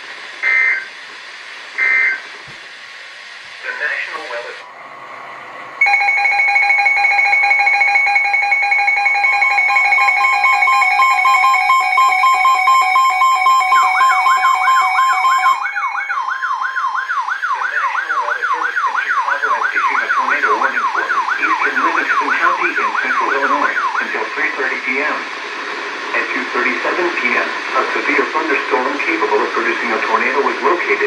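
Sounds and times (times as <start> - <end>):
siren-like rising tone: 4.6 - 24.0
loud steady alert tone: 5.8 - 24.1.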